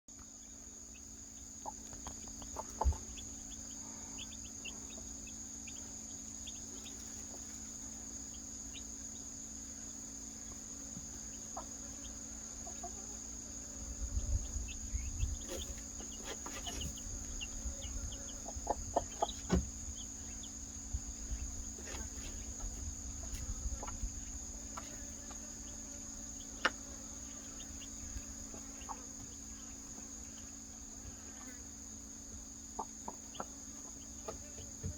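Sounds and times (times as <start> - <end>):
high insect drone: 0.1 - 34.9
chicks peeping: 0.2 - 13.4, 14.0 - 31.5, 32.6 - 34.9
hen clucking: 1.6 - 7.5, 15.4 - 19.6, 32.7 - 34.4.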